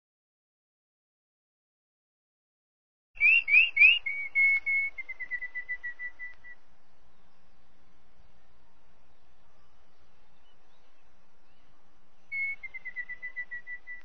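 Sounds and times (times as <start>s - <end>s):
bird singing whistled song: 3.2s - 7.6s, 9.4s - 14.0s.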